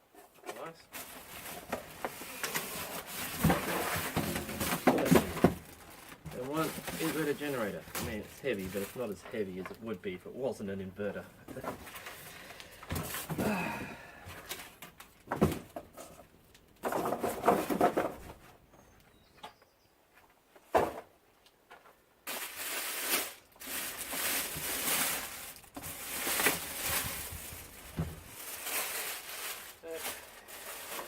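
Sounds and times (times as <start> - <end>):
wrapping rustling and crinkling: 0.6 - 10.1, 22.2 - 31.0
packaging knocks and bumps: 1.0 - 9.8, 23.6 - 31.0.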